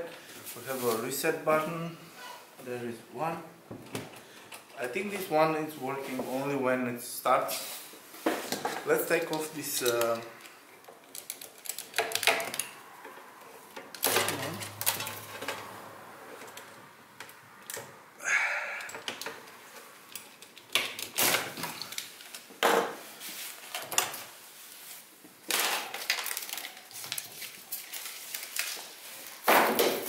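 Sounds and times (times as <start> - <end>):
rustling or scraping: 0.2 - 2.5, 7.4 - 10.4, 21.5 - 29.5
clatter of plastic and metal parts: 8.3 - 15.7.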